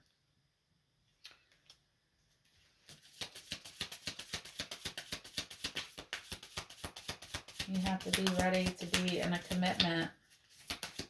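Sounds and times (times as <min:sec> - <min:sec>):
cards being shuffled: 0:02.8 - 0:11.0.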